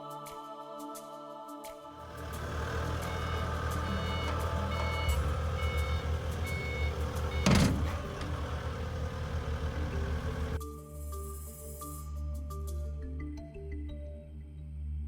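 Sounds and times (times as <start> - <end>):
diesel engine running: 2.0 - 10.6
backup alarm beeping: 2.1 - 10.6.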